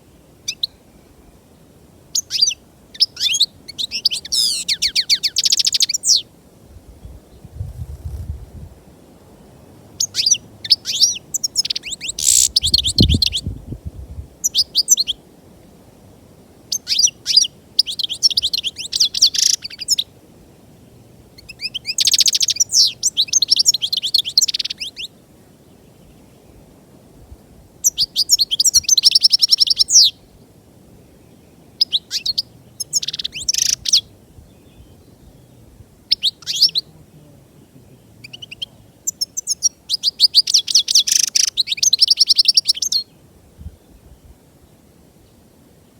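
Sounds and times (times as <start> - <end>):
goldfinch singing: 2.2 - 6.3, 10.0 - 13.5, 21.4 - 25.1, 31.8 - 35.0, 36.1 - 36.9, 37.6 - 43.1.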